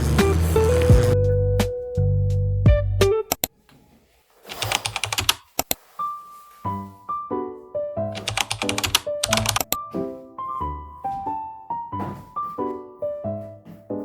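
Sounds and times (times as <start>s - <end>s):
background piano music: 0.0s - 3.4s, 5.8s - 14.0s
computer keyboard typing: 4.5s - 5.5s, 8.2s - 9.8s.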